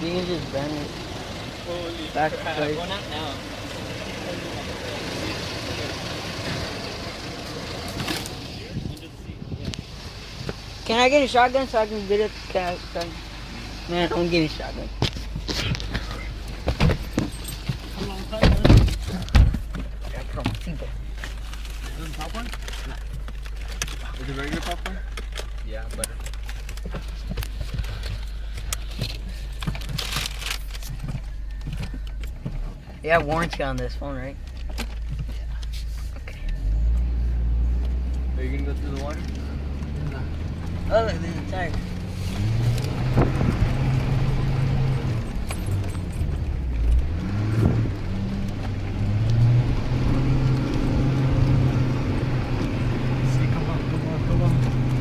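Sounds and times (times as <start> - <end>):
suv engine revving: 0.0 - 55.0
vehicle cabin drone: 0.0 - 55.0
rustling: 14.2 - 38.1.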